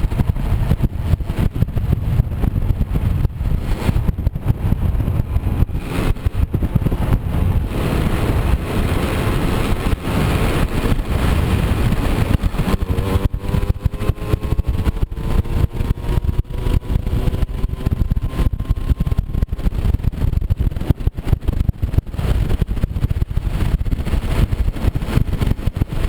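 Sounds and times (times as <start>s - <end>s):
heavy low rumble: 0.0s - 26.0s
moped engine running: 0.0s - 26.0s.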